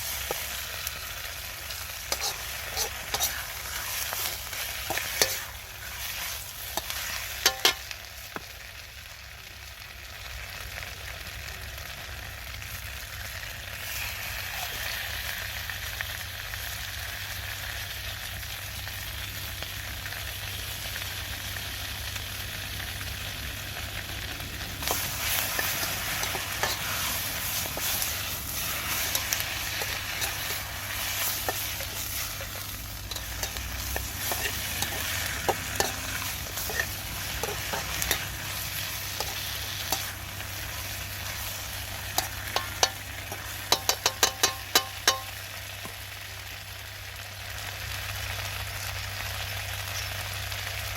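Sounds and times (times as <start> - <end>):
food sizzling in a wok: 0.0 - 50.9
utensil knocking against pan: 43.8 - 45.3.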